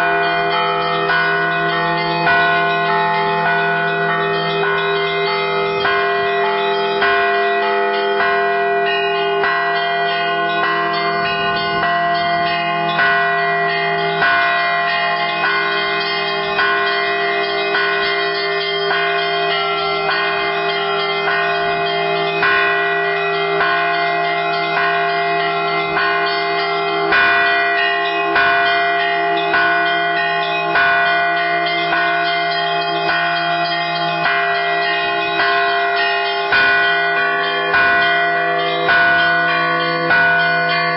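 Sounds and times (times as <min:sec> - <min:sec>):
church bells pealing: 0:00.0 - 0:40.9.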